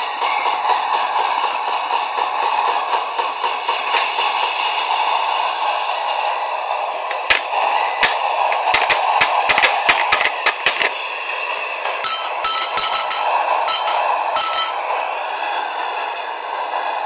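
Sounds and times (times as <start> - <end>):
sharp clicks and knocks: 7.1 - 11.0
metallic clinking and rattling: 11.8 - 14.9.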